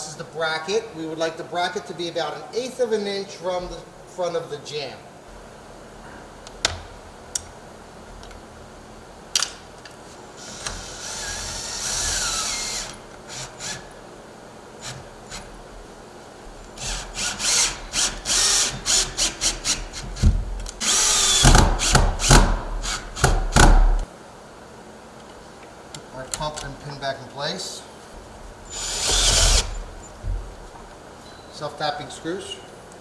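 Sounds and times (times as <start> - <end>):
power drill driving screws: 10.4 - 14.0, 14.8 - 15.6, 16.8 - 24.0, 28.6 - 30.2.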